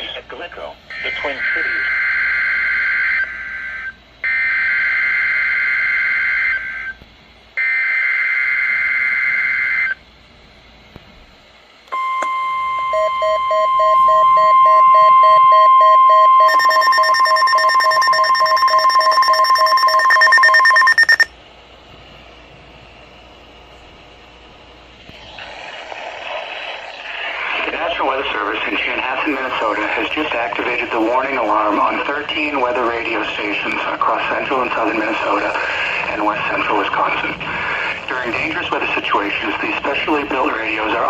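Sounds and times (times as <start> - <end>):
rapid electronic alarm beeping: 0.9 - 6.9, 12.0 - 21.3
steady warning alarm tone: 0.9 - 7.0, 7.6 - 10.0, 11.9 - 21.3
screeching digital data bursts: 1.0 - 2.3, 13.8 - 21.3.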